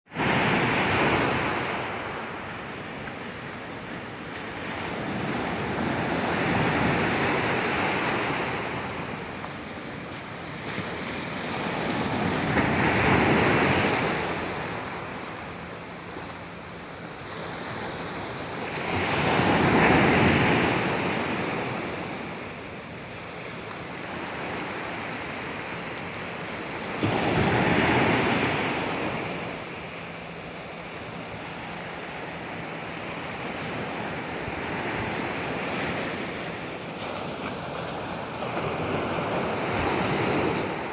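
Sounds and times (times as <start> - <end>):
sea waves washing in: 0.1 - 40.9.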